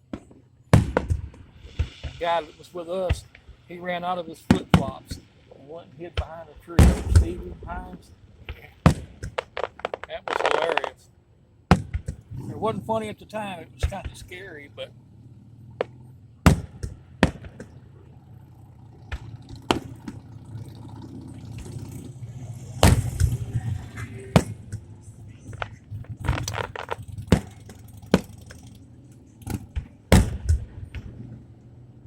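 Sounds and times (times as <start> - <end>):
low hum: 0.0 - 32.0
fireworks bangs: 0.1 - 11.0, 11.7 - 14.6, 15.8 - 17.8, 21.6 - 28.7, 29.4 - 31.4.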